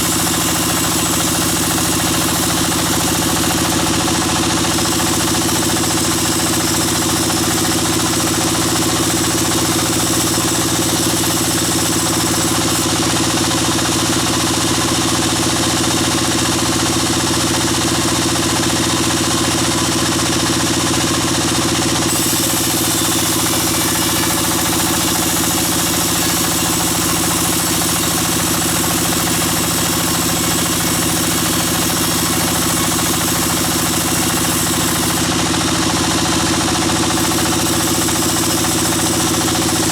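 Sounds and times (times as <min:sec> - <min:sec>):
bandsaw sawmill drone: 0:00.0 - 0:14.8, 0:21.1 - 0:39.9.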